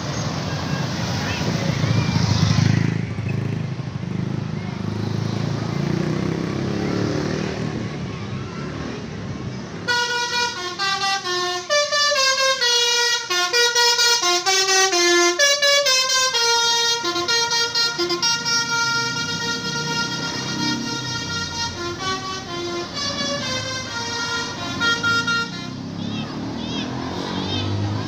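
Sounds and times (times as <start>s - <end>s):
bus horn playing a fast tune: 9.9s - 27.8s.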